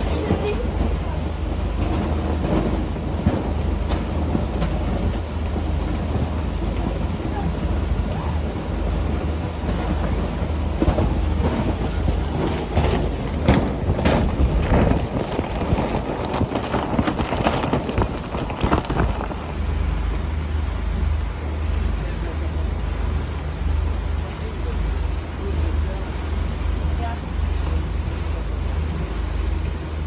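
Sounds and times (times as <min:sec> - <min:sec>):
pouring rain: 0:00.0 - 0:30.0
wind buffeting microphone: 0:00.0 - 0:30.0
sharp knocks and clatters: 0:10.7 - 0:19.6.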